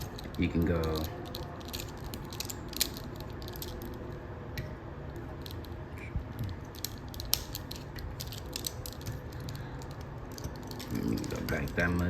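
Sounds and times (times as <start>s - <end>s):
plastic figure clicking and rubbing: 5.3s - 12.0s.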